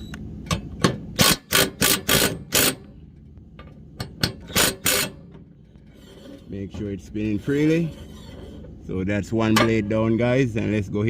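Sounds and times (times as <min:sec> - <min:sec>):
impact wrench bursts: 0:00.8 - 0:02.9, 0:04.1 - 0:05.4.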